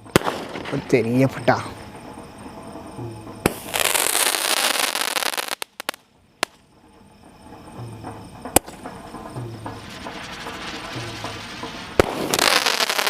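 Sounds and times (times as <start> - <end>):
firework pops: 0.0 - 1.0, 3.4 - 6.6, 8.5 - 13.0
loud firework bang: 0.0 - 1.2, 3.3 - 6.6, 8.5 - 13.0
firework crackling: 0.0 - 7.2, 8.3 - 13.0.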